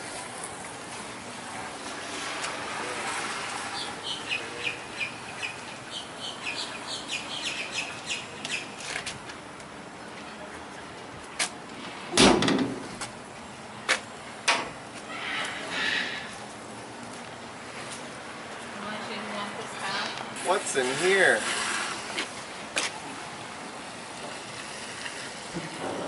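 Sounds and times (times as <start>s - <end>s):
small birds chirping: 3.8s - 8.7s
metal knocks and thump: 12.2s - 12.9s.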